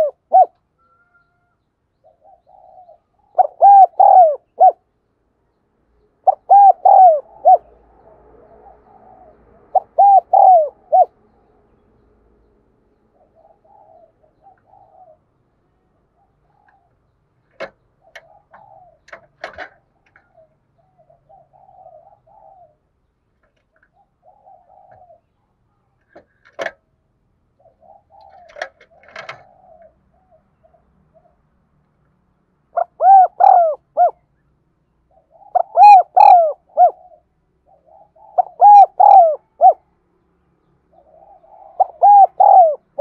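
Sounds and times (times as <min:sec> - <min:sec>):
dove cooing: 0:00.0 - 0:04.9, 0:06.2 - 0:11.2, 0:13.1 - 0:22.9, 0:23.5 - 0:25.5, 0:27.5 - 0:31.4, 0:32.7 - 0:34.3, 0:35.1 - 0:39.9, 0:40.9 - 0:43.0.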